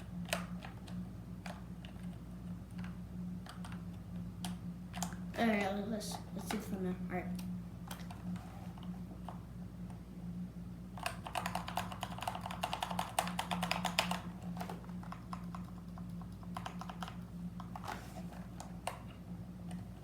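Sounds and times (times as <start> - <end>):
steady low hum: 0.0 - 20.0
mechanical keyboard keys clacking: 11.0 - 17.9.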